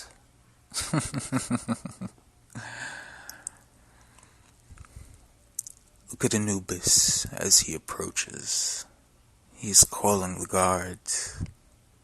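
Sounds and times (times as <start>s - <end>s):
breathy exhale: 2.6s - 5.1s.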